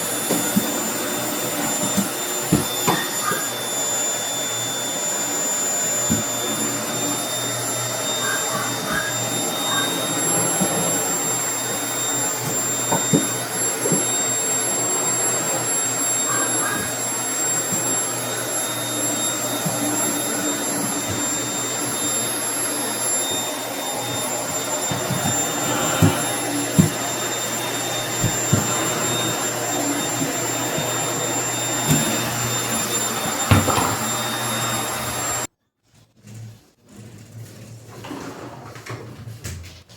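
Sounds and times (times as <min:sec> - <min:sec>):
vacuum cleaner whining: 0:00.0 - 0:35.5
vacuum nozzle knocking: 0:07.3 - 0:21.6, 0:22.5 - 0:35.2.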